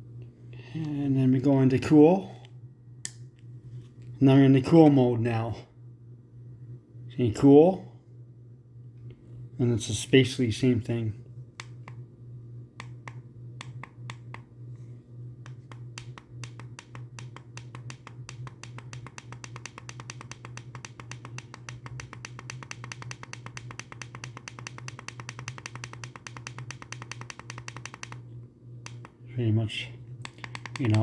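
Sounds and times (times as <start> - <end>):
steady low hum: 0.0 - 31.0
thermostat button clicks: 28.9 - 29.2.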